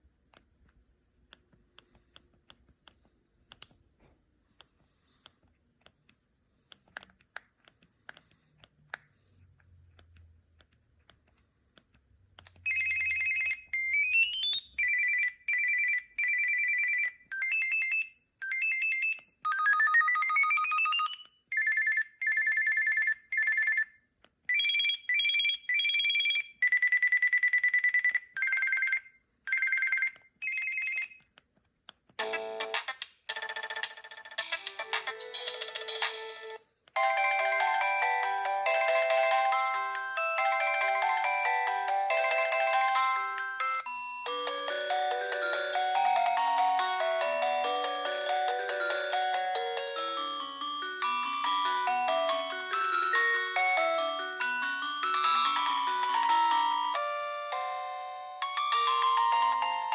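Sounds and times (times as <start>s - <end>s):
phone ringtone beeps: 12.6s - 31.2s, 32.2s - 59.9s.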